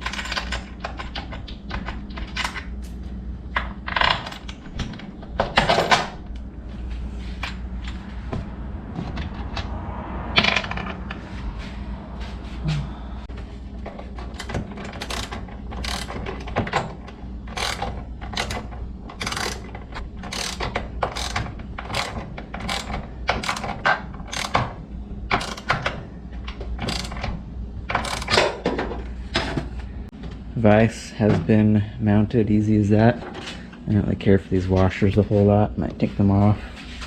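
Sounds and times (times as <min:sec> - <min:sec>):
ratchet wrench clicking: 0:14.4 - 0:16.5, 0:17.5 - 0:24.6, 0:25.4 - 0:25.8, 0:26.8 - 0:27.2, 0:28.0 - 0:28.5.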